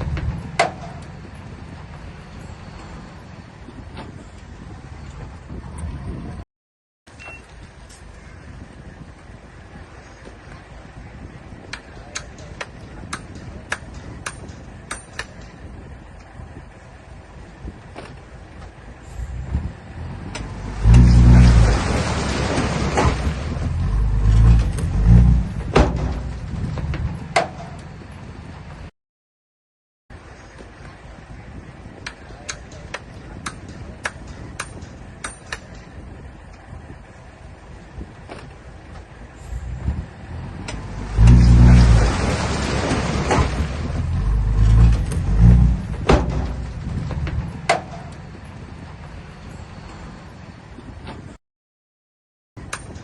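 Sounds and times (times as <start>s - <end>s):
diesel engine revving: 19.0s - 28.8s, 39.2s - 50.2s.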